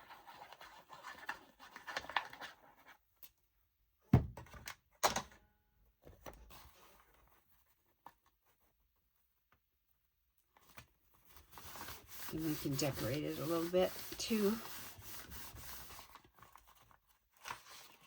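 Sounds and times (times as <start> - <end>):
paper being rubbed by hand: 11.5 - 16.3.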